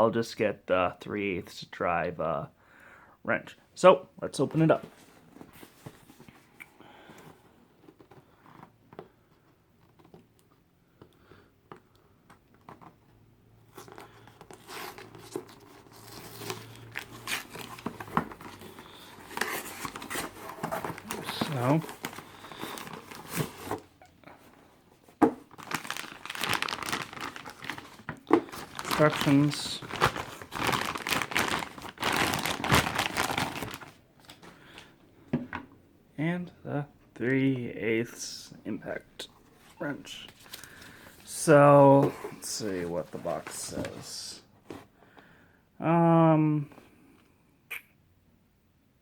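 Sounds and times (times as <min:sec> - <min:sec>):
packaging crinkling and tearing: 0:13.7 - 0:23.9, 0:25.5 - 0:34.5, 0:40.2 - 0:41.0.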